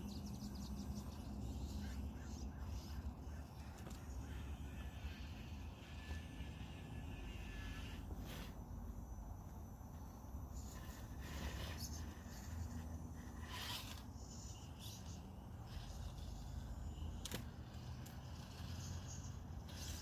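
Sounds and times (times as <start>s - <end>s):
toy car motor hum: 0.0s - 9.3s, 9.9s - 20.0s
tires scraping over rough terrain: 10.6s - 20.0s.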